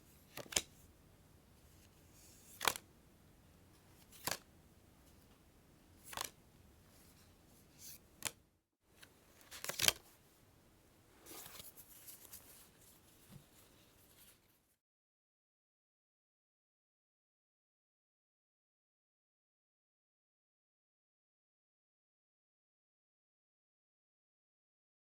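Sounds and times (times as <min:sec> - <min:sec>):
playing cards snapping: 0:02.6 - 0:02.8, 0:04.2 - 0:04.4, 0:09.6 - 0:10.0
cards rustling: 0:09.4 - 0:10.0.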